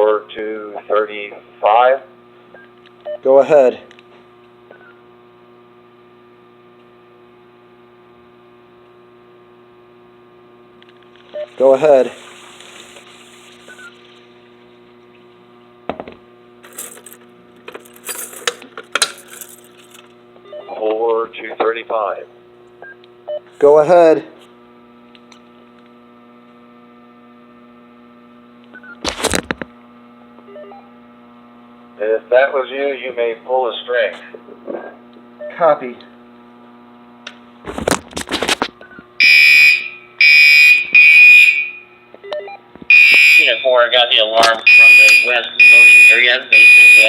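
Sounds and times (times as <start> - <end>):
faint electrical hum: 0.0 - 47.0
radio hum: 11.1 - 15.0, 42.8 - 47.0
radio static burst with clicks: 11.2 - 14.4, 43.6 - 46.6
descending beep: 39.2 - 43.8, 44.4 - 47.0.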